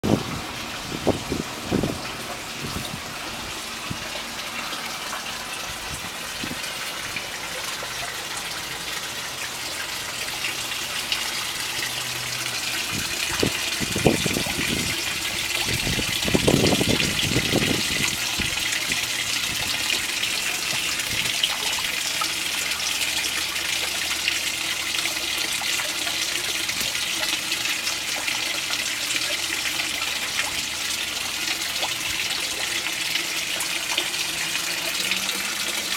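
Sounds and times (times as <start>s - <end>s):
waterfall splashing into pond: 0.0s - 35.9s.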